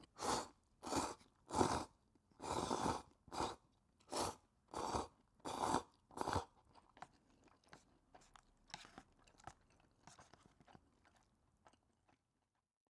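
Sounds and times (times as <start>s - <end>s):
loud eating noise: 0.2s - 12.6s
soft chewing with wet clicks: 5.2s - 12.7s.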